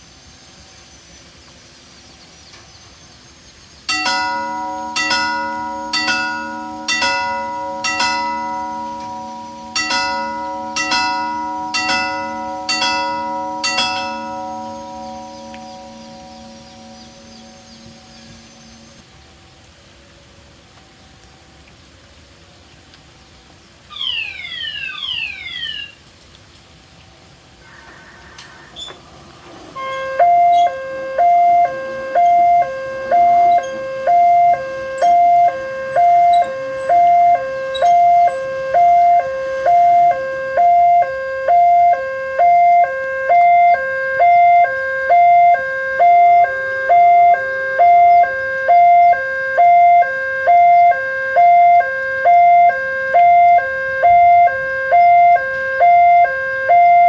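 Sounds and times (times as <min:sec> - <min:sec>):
level crossing warning bell: 0:03.9 - 0:19.0, 0:29.8 - 0:57.0
two-tone electronic alarm: 0:03.9 - 0:19.0, 0:23.9 - 0:26.0, 0:29.8 - 0:57.0.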